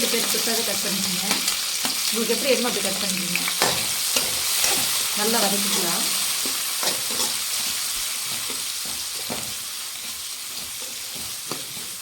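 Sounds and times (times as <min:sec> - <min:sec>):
onions sizzling in hot oil: 0:00.0 - 0:12.0
spoon scraping and knocking pan: 0:03.5 - 0:12.0.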